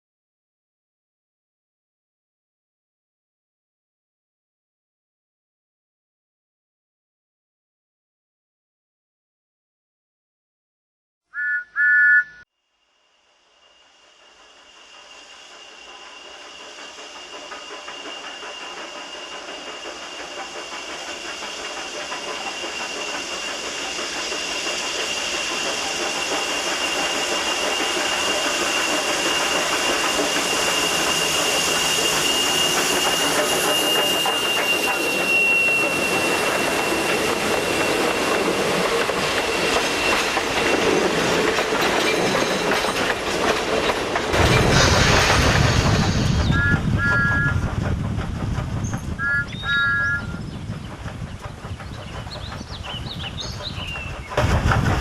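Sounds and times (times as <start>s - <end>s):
steam train running on rails: 12.9s - 55.0s
steam hissing: 13.0s - 55.0s.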